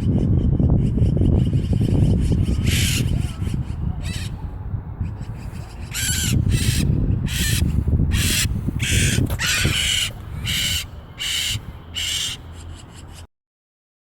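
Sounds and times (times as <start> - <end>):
bird screeching: 1.9 - 4.4, 5.2 - 13.2.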